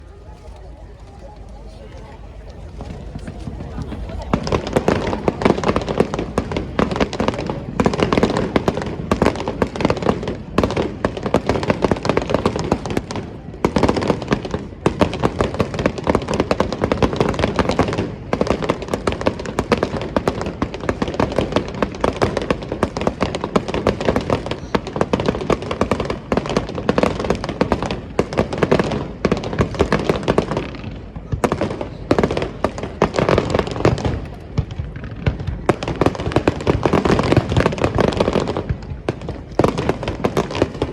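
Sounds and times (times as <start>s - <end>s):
fireworks bursting bangs and crackles: 0.0s - 40.9s.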